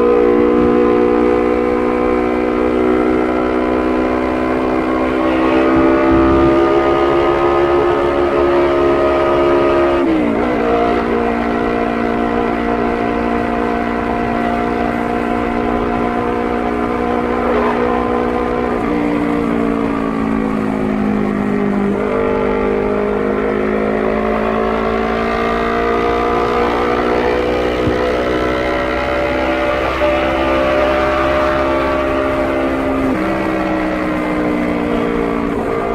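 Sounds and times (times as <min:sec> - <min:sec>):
motorcycle engine at road speed: 0:00.0 - 0:35.9.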